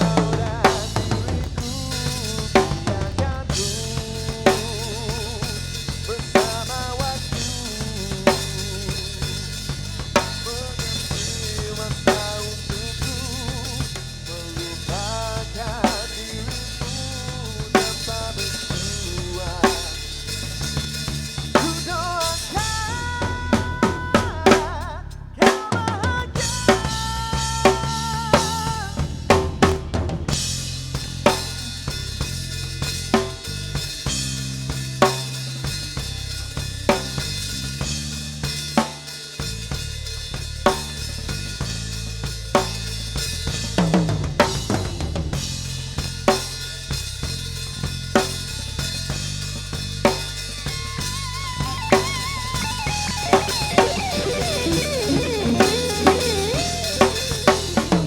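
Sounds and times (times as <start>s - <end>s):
bass line: 0.0s - 38.7s, 39.4s - 58.0s
drum kit: 0.0s - 58.0s
lead instrument bending notes: 51.8s - 58.0s.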